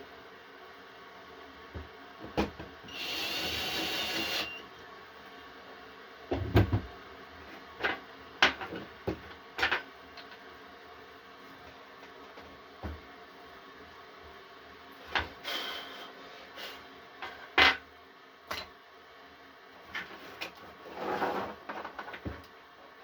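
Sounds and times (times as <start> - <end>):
power tool high whine: 2.9 - 4.6.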